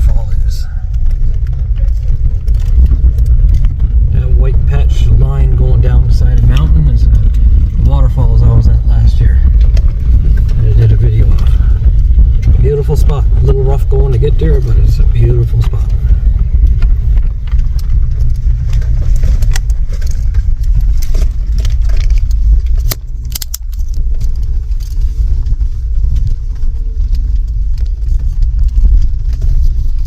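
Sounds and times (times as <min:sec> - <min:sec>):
engine and tyres rumbling: 0:00.0 - 0:30.0
clicks and rattles: 0:09.4 - 0:30.0.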